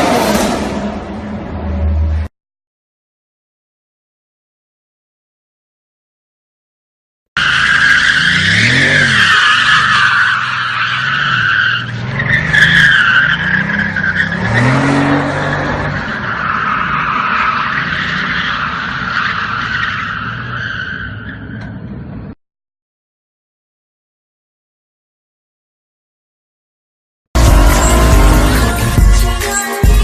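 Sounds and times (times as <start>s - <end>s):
car engine revving: 0.0s - 2.3s, 8.1s - 16.0s, 27.4s - 29.4s
car tyres squealing: 7.4s - 22.2s, 27.4s - 29.0s.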